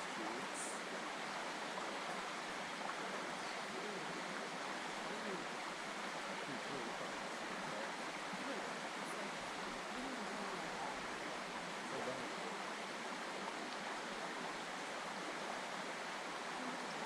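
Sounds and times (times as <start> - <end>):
river water rushing and gurgling: 0.0 - 17.0.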